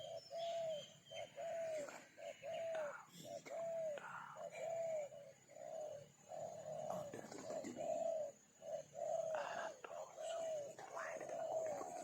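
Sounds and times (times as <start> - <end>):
faint high bird chirps: 0.0 - 7.8
bird hooting song: 0.0 - 12.0.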